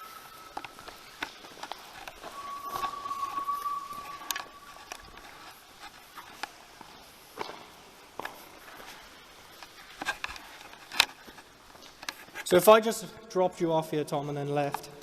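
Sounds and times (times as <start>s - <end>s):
high whistle-like tone: 0.0s - 5.8s.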